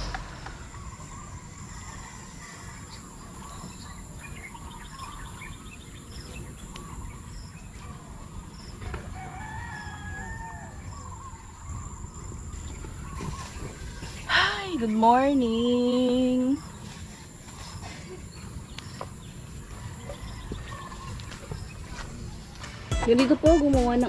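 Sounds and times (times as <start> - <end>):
small birds chirping: 0.0 - 24.0
rooster crowing: 8.8 - 11.0.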